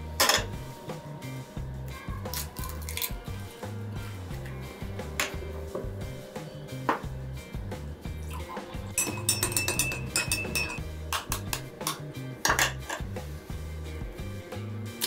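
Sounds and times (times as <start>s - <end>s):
cutlery clinking against dishes: 0.2s - 0.6s, 8.9s - 13.1s.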